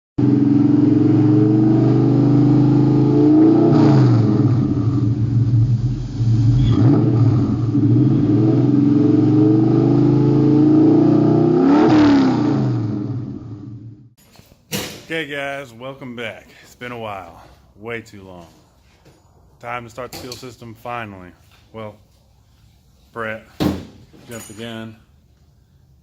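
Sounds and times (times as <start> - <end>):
car engine accelerating: 0.2 - 14.2.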